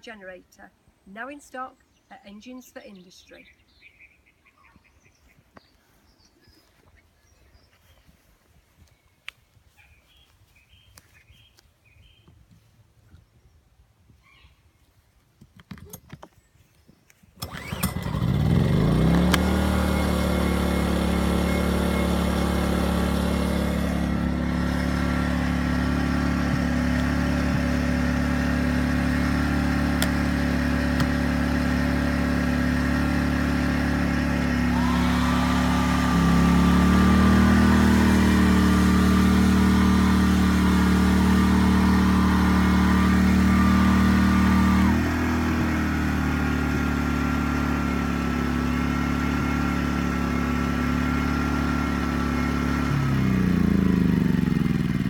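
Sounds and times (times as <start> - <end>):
generator clicks: 17.4 - 19.7
generator engine running: 17.4 - 55.0.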